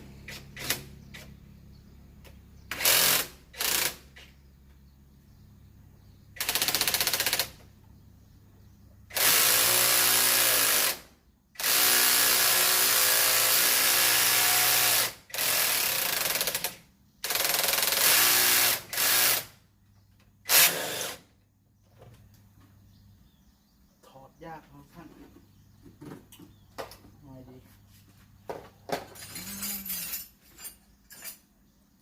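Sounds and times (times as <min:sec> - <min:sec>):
power tool rattling: 0:00.2 - 0:01.3, 0:02.7 - 0:04.4, 0:06.4 - 0:07.7, 0:09.1 - 0:19.5, 0:20.4 - 0:21.3.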